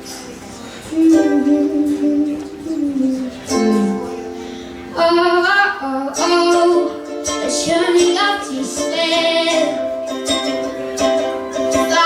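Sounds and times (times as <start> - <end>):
plucked strings: 0.0 - 12.0
woman singing: 0.9 - 4.1, 4.9 - 10.0, 11.7 - 12.0.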